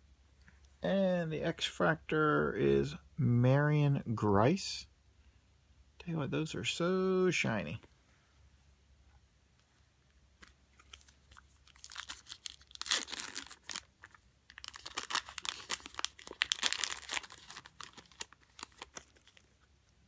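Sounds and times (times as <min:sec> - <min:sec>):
foil wrapper tearing and crinkling: 0:10.8 - 0:19.6.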